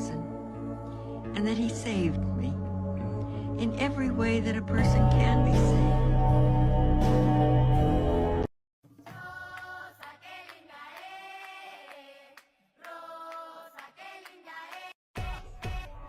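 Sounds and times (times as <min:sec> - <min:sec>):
soft wordless choir singing: 0:09.0 - 0:15.0.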